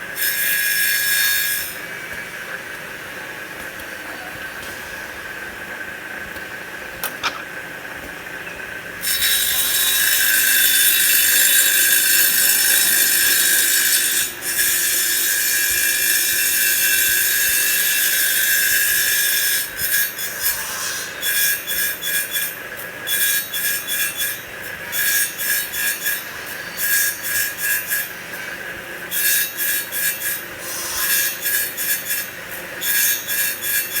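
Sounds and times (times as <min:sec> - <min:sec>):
wood lathe running: 0:09.0 - 0:18.1
lathe tool cutting wood: 0:09.0 - 0:19.2.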